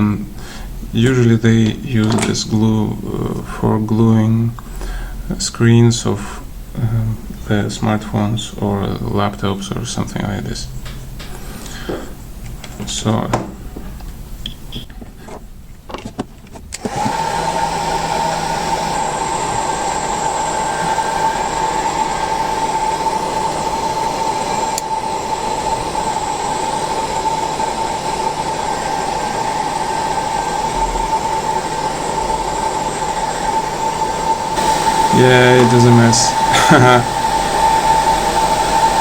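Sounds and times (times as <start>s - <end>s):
small electric motor whining: 16.8s - 39.0s.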